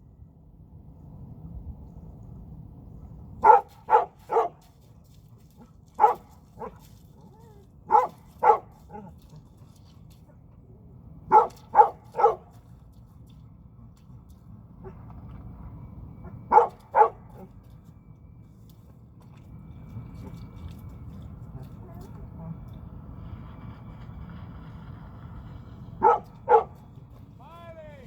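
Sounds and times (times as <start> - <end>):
dog barking: 3.4 - 4.6, 6.0 - 6.8, 7.9 - 9.1, 11.3 - 12.5, 16.5 - 17.5, 26.0 - 26.8.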